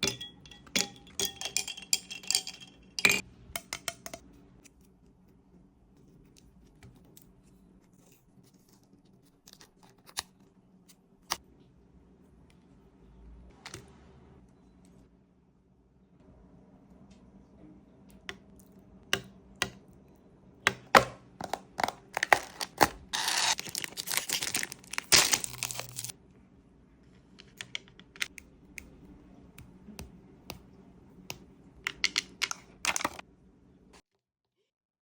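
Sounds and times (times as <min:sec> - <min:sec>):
crinkling tearing noise: 0:22.1 - 0:26.1.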